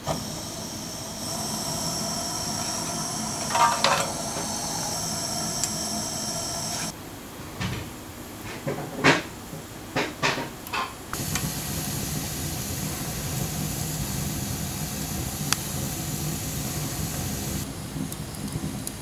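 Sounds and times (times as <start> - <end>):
firewood hissing with faint whistle: 0.0 - 7.0, 11.1 - 18.6.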